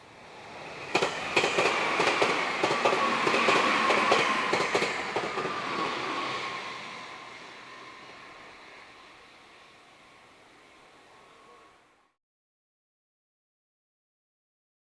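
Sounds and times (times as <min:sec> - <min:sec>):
train wheels clacking on rails: 0:00.4 - 0:09.9.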